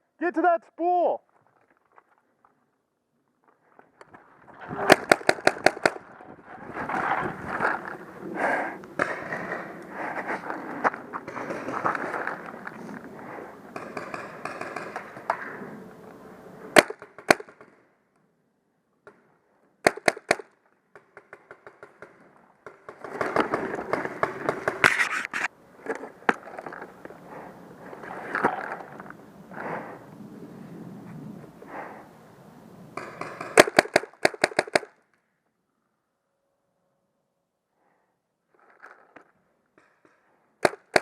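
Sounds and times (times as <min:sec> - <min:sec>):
paintball markers firing: 0:04.8 - 0:06.0, 0:13.7 - 0:15.5, 0:19.8 - 0:25.4, 0:33.0 - 0:35.0, 0:39.8 - 0:41.0.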